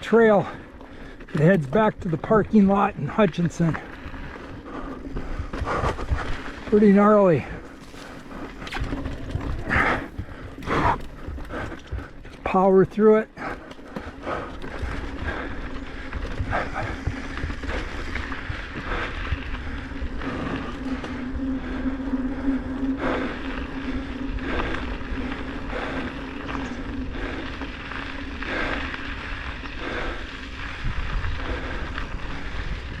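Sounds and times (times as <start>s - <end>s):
rolling bike hum: 0.0s - 33.0s
wind rushing over microphone: 2.5s - 12.2s, 14.2s - 33.0s.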